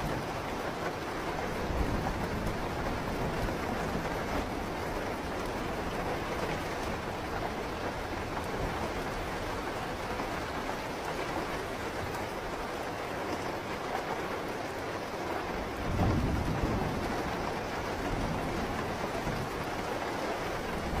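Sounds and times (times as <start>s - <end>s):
low rumble of thunder: 0.0s - 11.6s, 15.5s - 21.0s
steady rain falling: 0.0s - 21.0s.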